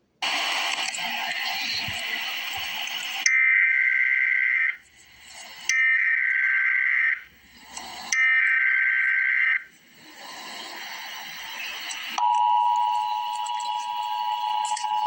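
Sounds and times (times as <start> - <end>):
buzzing digital data tones: 10.5 - 15.0.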